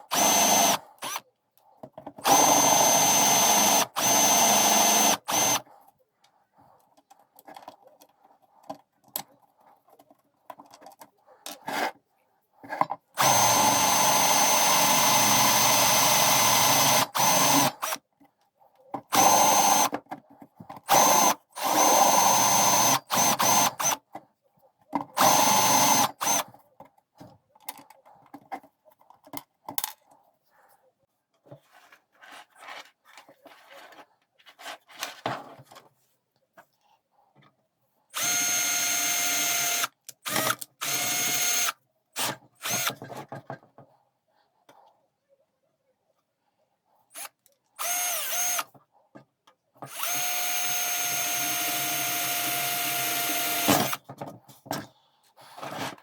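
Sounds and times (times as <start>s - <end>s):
electric power drill running: 0.1s - 1.2s, 2.2s - 5.6s, 13.2s - 18.0s, 19.1s - 19.9s, 20.9s - 24.0s, 25.2s - 26.4s, 38.2s - 41.7s, 42.6s - 42.9s, 47.8s - 48.6s, 49.9s - 54.0s
faint handling noises: 5.6s - 13.2s, 26.4s - 38.1s.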